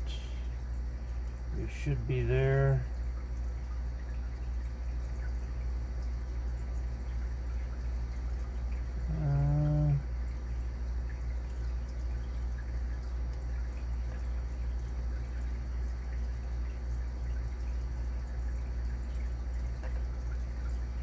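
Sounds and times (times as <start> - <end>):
low electrical hum: 0.0 - 21.0
man humming: 9.0 - 10.1.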